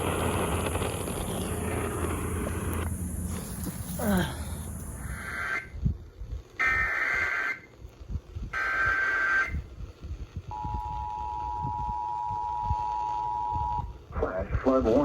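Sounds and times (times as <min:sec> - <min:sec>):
screeching data tone bursts: 0:00.0 - 0:05.7.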